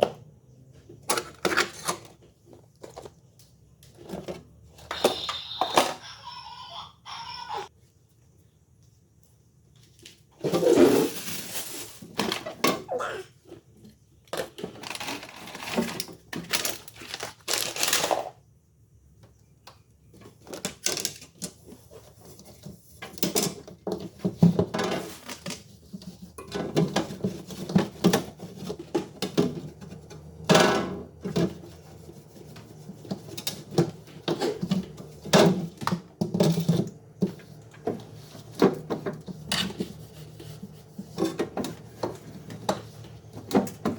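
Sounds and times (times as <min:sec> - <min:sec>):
plastic packaging rustling: 0:10.4 - 0:12.6, 0:14.6 - 0:18.4.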